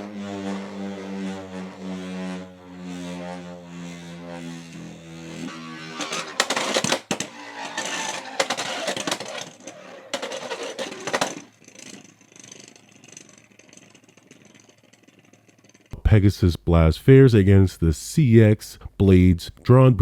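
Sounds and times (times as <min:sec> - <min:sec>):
spinning top rattling in plastic arena: 0:00.0 - 0:16.0
spinning top whirring: 0:00.0 - 0:16.0.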